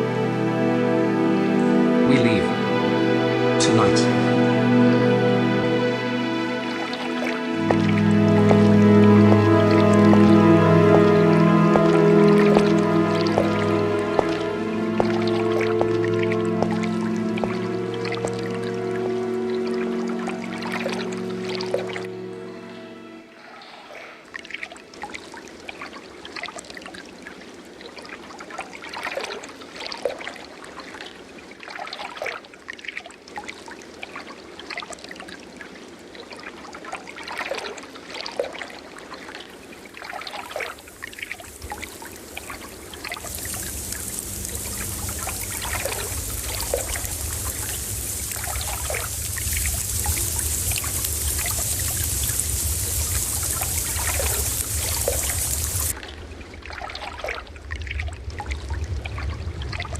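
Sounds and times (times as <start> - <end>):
rushing water hiss: 0.0 - 22.3, 39.0 - 59.9
water trickling and splashing: 0.0 - 22.4, 23.9 - 59.9.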